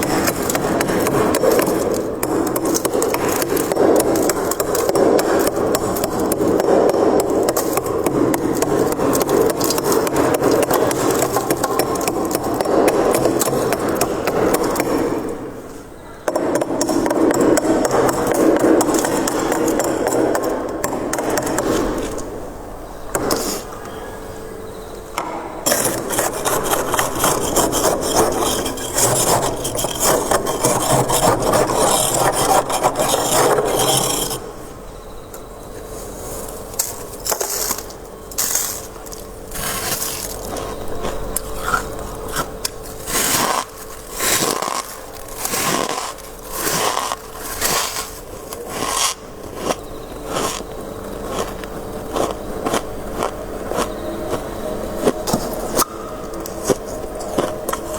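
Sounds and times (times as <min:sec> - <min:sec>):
frost being scraped: 0:25.7 - 0:34.5, 0:37.4 - 0:40.8, 0:41.5 - 0:50.6.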